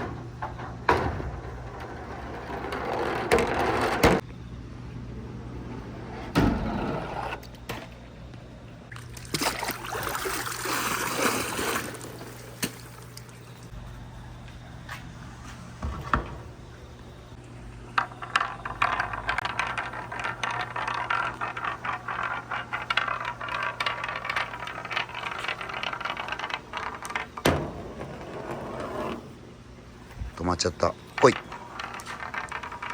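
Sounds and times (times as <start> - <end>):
marbles rolling and clicking: 17.8 - 29.2, 30.6 - 32.9.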